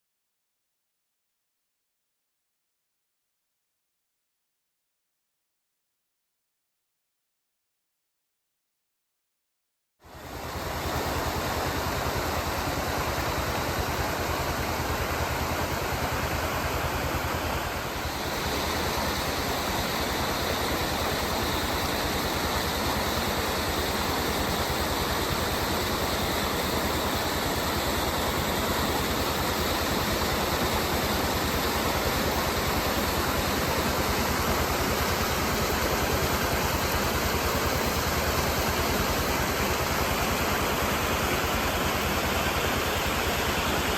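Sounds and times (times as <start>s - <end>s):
waterfall rushing: 10.4s - 43.9s.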